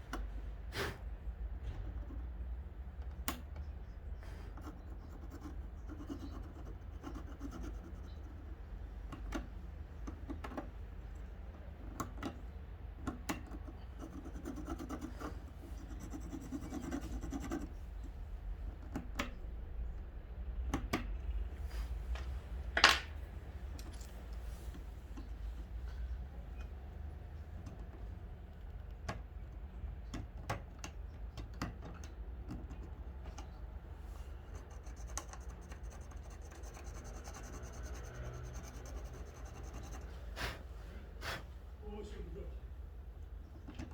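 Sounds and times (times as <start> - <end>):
scraping and rubbing on small parts: 34.2 - 40.2.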